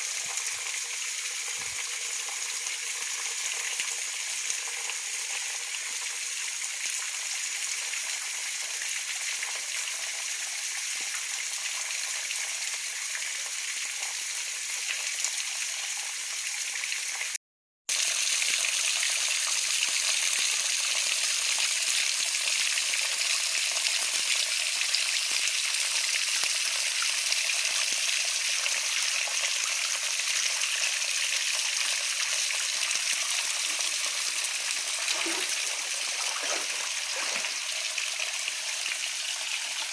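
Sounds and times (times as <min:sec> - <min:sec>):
flowing water: 0:00.0 - 0:13.9, 0:26.6 - 0:39.9.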